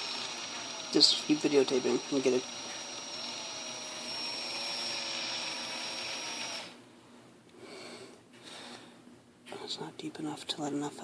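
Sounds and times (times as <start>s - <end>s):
small power drill whining: 0.0s - 6.8s.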